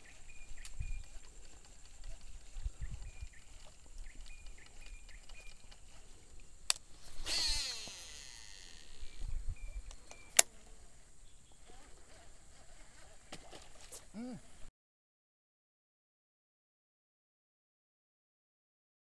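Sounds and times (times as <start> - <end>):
spinning spool whine: 7.1 - 10.2.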